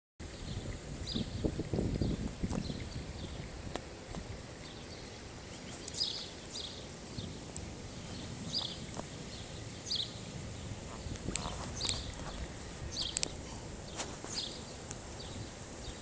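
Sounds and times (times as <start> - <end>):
bird chirps: 10.9 - 16.0.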